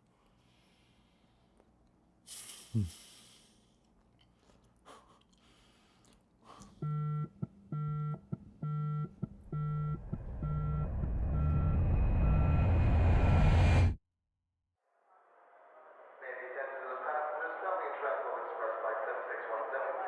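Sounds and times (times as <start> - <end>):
microwave oven beeping: 6.8 - 13.4
low rumbling noise: 9.2 - 14.0.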